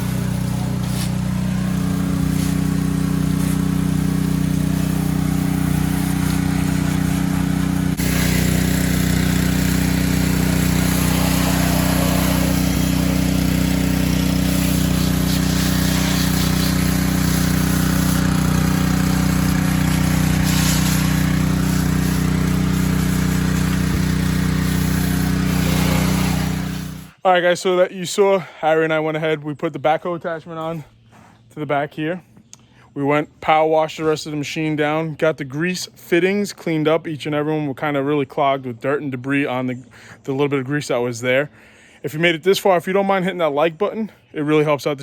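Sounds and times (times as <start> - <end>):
hiss of noise: 0.0 - 9.0, 9.8 - 18.3, 20.4 - 24.0
engine running with low hum: 0.0 - 27.2.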